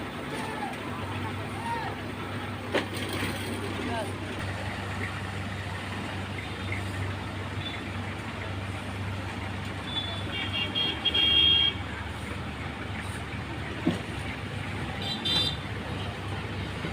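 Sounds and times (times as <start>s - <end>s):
diesel engines humming: 0.0s - 16.9s
vehicle horn toot: 9.8s - 11.8s, 15.0s - 15.6s.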